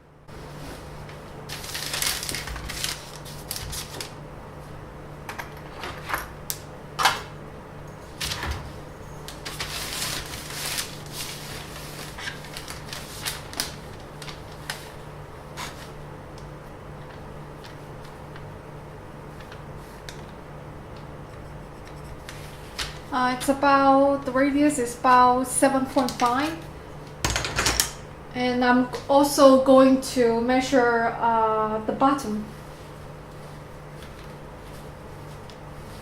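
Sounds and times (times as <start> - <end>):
steady low hum: 0.0 - 27.2.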